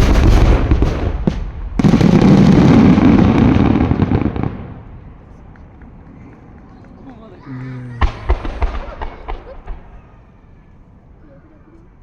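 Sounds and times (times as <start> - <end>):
fireworks boom with rumbling echo: 0.0 - 6.7, 8.0 - 10.2
fireworks sharp cracks: 0.0 - 7.0, 7.9 - 10.2.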